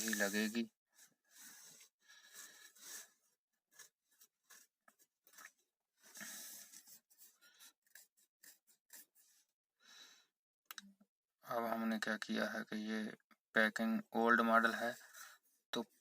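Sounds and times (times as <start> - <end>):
faint rustling and handling: 0.0 - 9.5.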